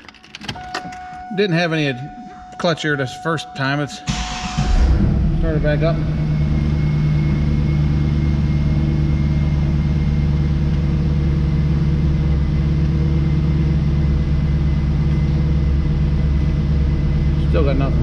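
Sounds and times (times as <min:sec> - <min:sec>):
faint steady high tone: 0:00.5 - 0:10.4
car engine idling: 0:04.0 - 0:18.0.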